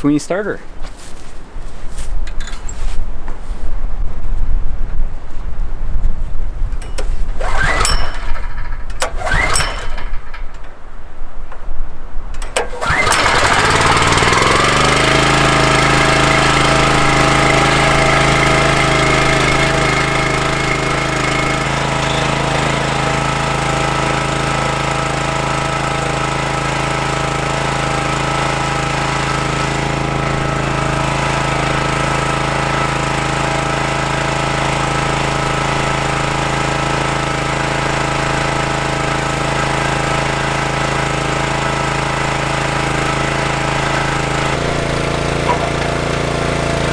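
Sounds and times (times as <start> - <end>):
small gas engine starting and running: 6.8 - 11.2, 12.3 - 46.9.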